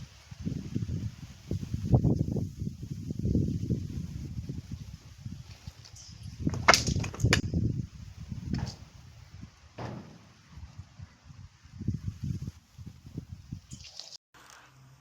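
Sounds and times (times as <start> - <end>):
wind rumbling on microphone: 0.0 - 13.8
wooden trebuchet clacks and swish: 5.5 - 7.8, 8.4 - 9.0, 9.8 - 10.8
wooden knocks: 6.5 - 7.5, 8.5 - 9.0, 9.8 - 10.7.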